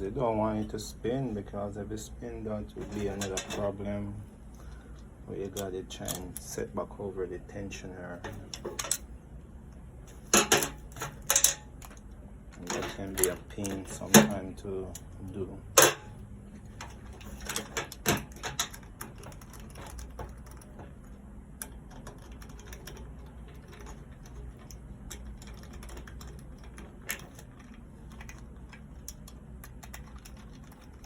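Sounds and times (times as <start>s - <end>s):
small parts and tools clicking: 4.5s - 6.6s, 8.2s - 9.1s, 9.7s - 16.2s, 16.8s - 31.0s.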